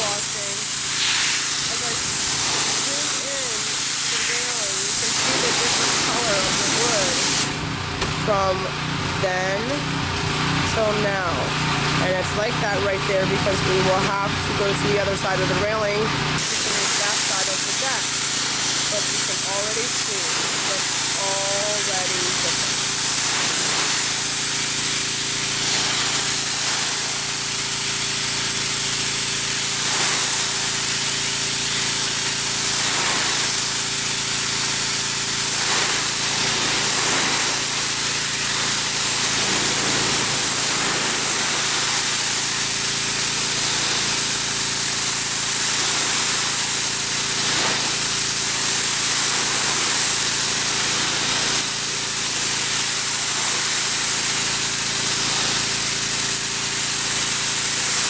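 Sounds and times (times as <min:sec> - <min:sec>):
pressure washer jet hissing: 0:00.0 - 0:58.0
pressure washer machine humming: 0:00.0 - 0:58.0.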